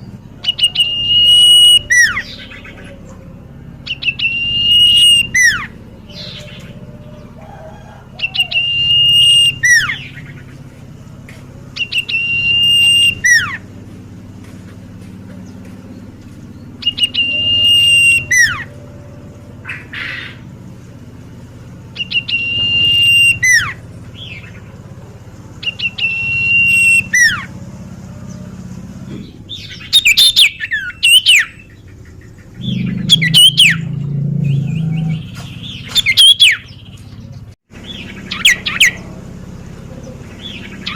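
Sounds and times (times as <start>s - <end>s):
bird singing whistled phrase: 0.5s - 2.6s, 3.9s - 6.5s, 8.2s - 10.2s, 11.8s - 13.6s, 16.8s - 18.7s, 22.0s - 24.4s, 25.6s - 27.5s, 32.6s - 33.9s.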